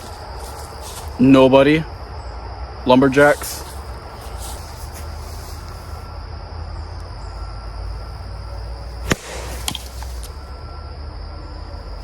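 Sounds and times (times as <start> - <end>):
insects droning: 0.0 - 12.0
sharp snap: 9.0 - 10.3.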